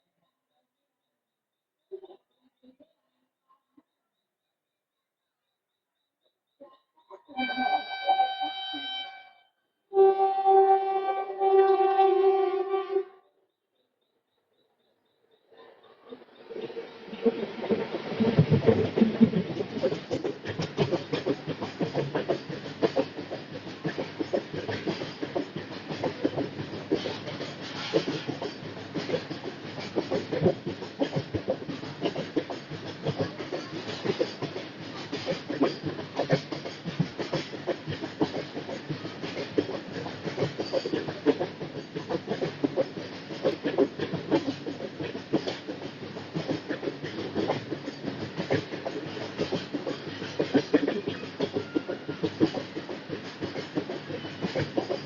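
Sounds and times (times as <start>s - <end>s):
train wheels clattering over rails: 15.8s - 55.0s.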